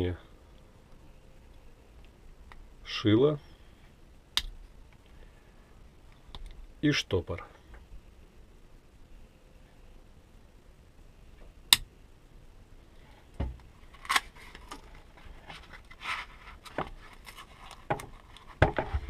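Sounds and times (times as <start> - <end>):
light scraping and rubbing: 14.3 - 19.0.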